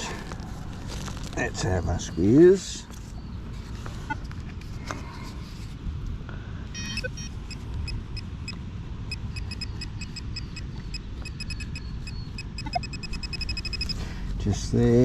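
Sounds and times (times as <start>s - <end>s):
steady low rumble: 0.0s - 2.3s, 3.0s - 15.0s
pinpointer probe beeping: 6.7s - 14.0s.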